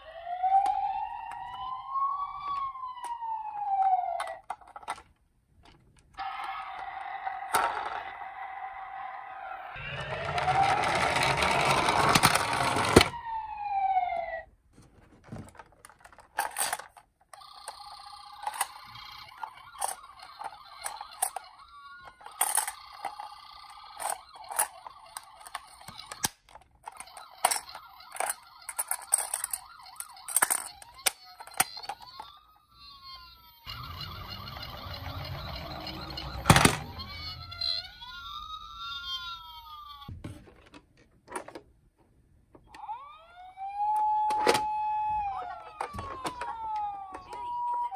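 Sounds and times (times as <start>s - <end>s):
toy electronic siren: 0.0s - 4.6s, 6.2s - 14.5s, 17.4s - 26.3s, 26.9s - 40.1s, 42.6s - 47.9s
plastic toys rattling and clicking: 0.6s - 8.4s, 9.8s - 13.2s, 14.9s - 41.7s, 43.9s - 47.9s.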